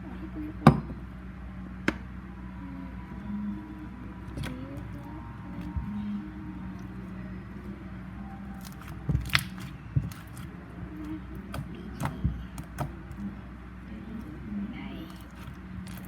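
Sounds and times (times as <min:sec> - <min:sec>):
steady low hum: 0:00.0 - 0:16.0
slime squished by hand: 0:08.5 - 0:13.2, 0:15.0 - 0:16.0.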